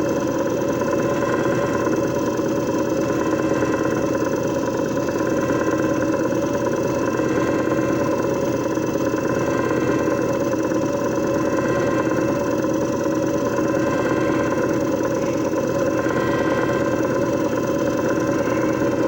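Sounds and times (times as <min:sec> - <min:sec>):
machine motor whirring: 0:09.1 - 0:19.0.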